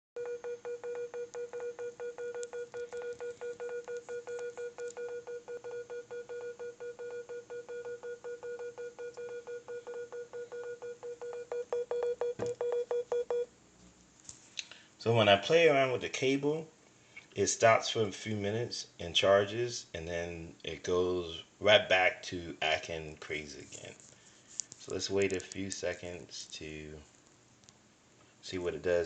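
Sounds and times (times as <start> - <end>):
smartphone charger beeps: 0.2 - 13.5.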